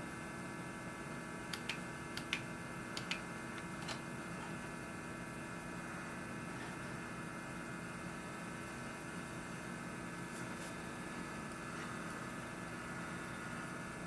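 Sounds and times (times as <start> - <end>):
steady electrical hum: 0.0 - 14.0
sharp switch clicks: 1.5 - 3.2.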